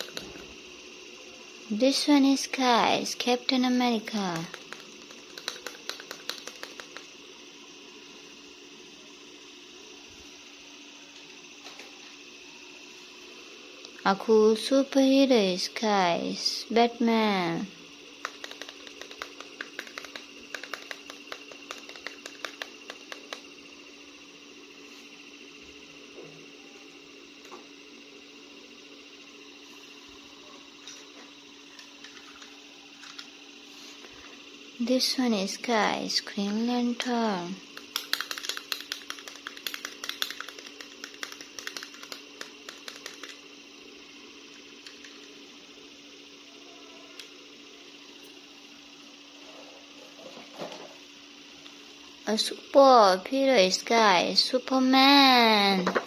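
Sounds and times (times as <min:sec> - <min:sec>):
faint steady hum: 0:00.0 - 0:56.0
plastic clicking and crackling: 0:04.2 - 0:07.1, 0:18.2 - 0:23.4.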